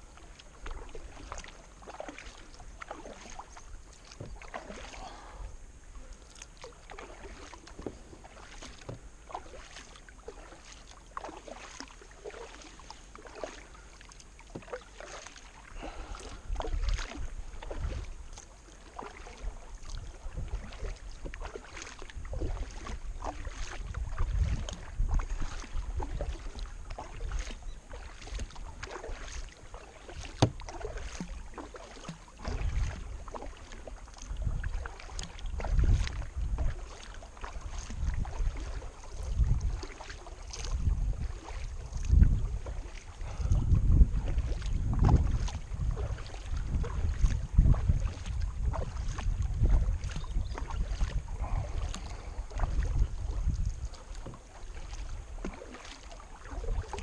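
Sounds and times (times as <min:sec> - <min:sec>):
paddle blades splashing: 0:00.0 - 0:57.0
wind buffeting microphone: 0:22.1 - 0:27.0, 0:34.3 - 0:34.8, 0:35.4 - 0:39.9, 0:40.5 - 0:55.5.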